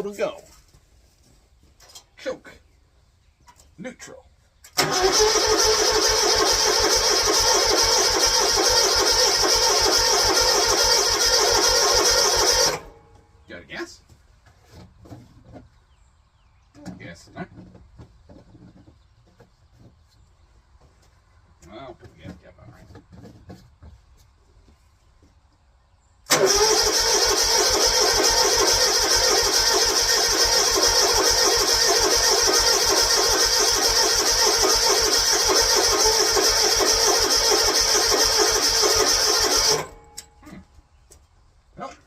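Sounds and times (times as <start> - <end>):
lawn mower engine running: 4.8 - 13.2, 26.3 - 40.3.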